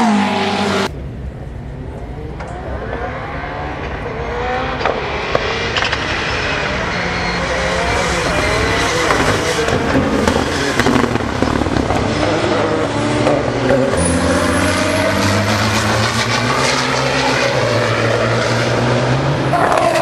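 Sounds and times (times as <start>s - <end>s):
racing engine running: 0.0s - 20.0s.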